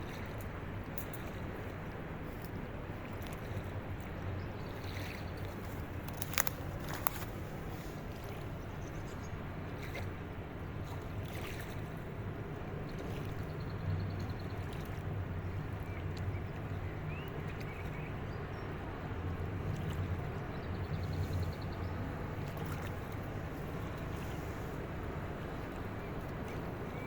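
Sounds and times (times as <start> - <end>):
boat engine drone: 18.4 - 27.0.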